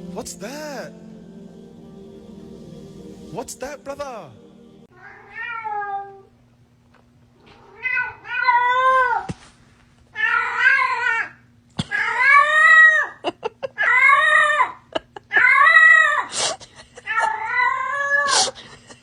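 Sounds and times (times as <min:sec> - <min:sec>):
cat meowing: 0:05.0 - 0:06.2.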